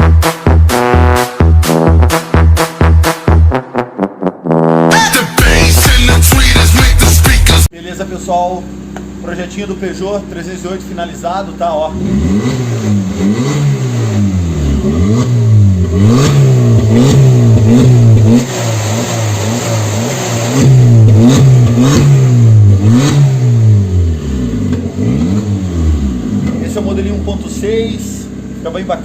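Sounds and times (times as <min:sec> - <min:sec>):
car engine revving: 0:00.0 - 0:07.7, 0:11.5 - 0:29.0.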